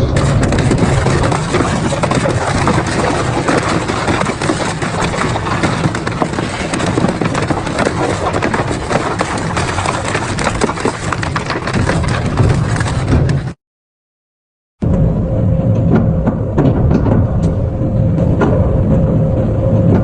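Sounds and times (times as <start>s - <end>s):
metal shredder crunching metal: 0.0s - 13.5s.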